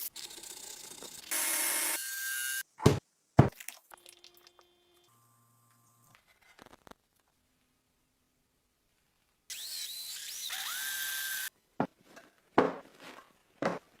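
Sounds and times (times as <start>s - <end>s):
power tool whining: 9.5s - 11.5s.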